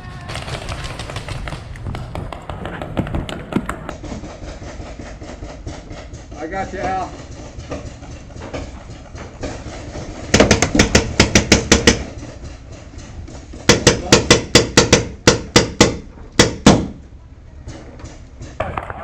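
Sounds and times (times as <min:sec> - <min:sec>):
paintball marker firing: 0:00.3 - 0:03.9.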